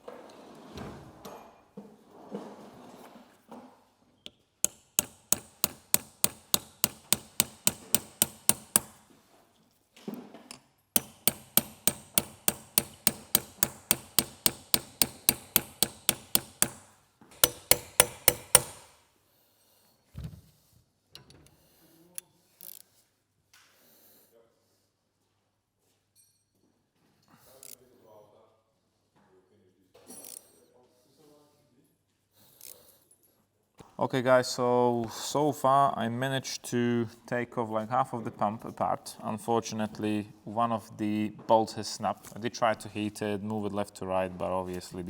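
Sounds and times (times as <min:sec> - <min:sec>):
hammer striking metal: 0:04.6 - 0:09.0, 0:11.0 - 0:19.0.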